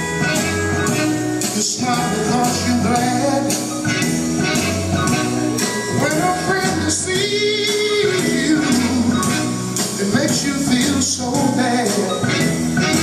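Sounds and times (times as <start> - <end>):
person singing over a band: 1.4 - 3.7.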